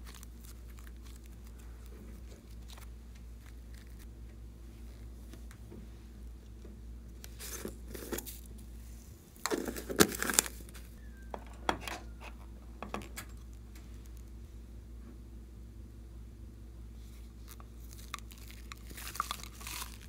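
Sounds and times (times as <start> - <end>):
small hard objects clattering: 17.8 - 20.0.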